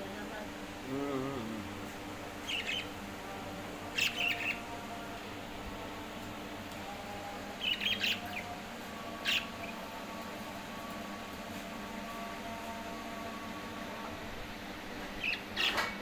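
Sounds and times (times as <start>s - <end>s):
steady low hum: 0.0s - 15.6s
parrot chirping: 2.4s - 3.0s, 3.9s - 4.6s, 7.6s - 8.5s, 9.2s - 9.8s, 15.2s - 15.8s.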